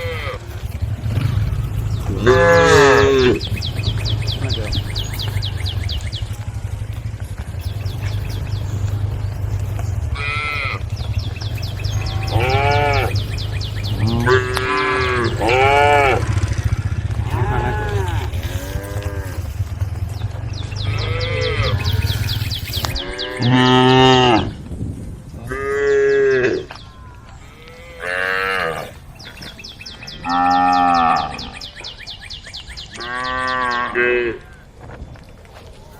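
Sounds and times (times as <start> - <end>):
cattle mooing: 0.0 - 5.4, 10.0 - 19.8, 20.7 - 24.6, 25.5 - 29.0, 30.2 - 31.6, 33.0 - 34.6
low rumble: 0.0 - 28.0.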